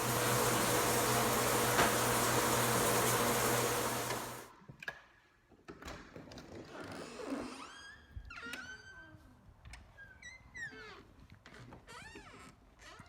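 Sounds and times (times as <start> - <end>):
shower water spraying: 0.0 - 4.5.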